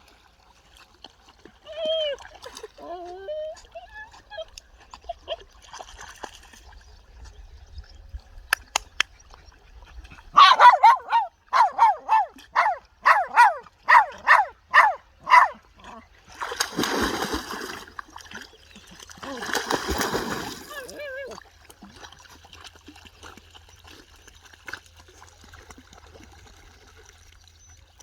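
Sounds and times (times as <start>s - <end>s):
dog barking: 10.4s - 15.6s
water splash: 16.3s - 18.5s, 19.1s - 21.4s.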